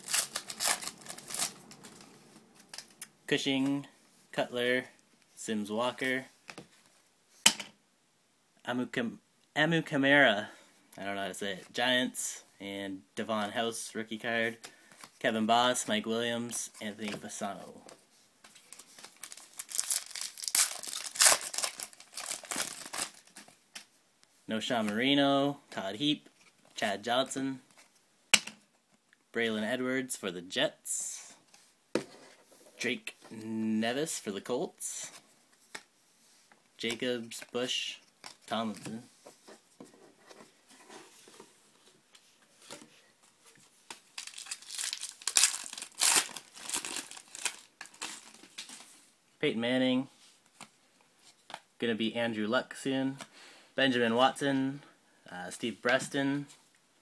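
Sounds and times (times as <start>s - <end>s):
wrapper crinkling and tearing: 0.0s - 3.0s, 18.7s - 23.5s, 44.0s - 48.7s.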